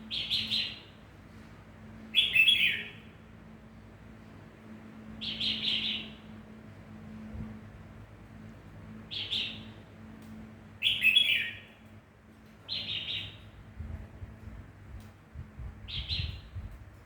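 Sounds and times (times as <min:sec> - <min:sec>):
pet bird chirping: 0:02.2 - 0:03.0, 0:10.8 - 0:11.7.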